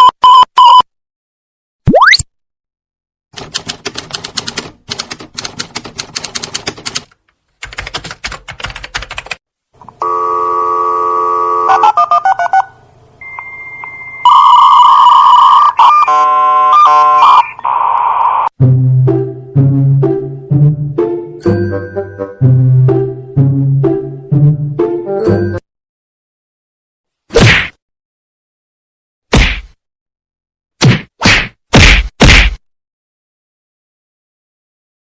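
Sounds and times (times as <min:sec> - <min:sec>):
rapid typing-like clicks: 0:03.4 - 0:09.4.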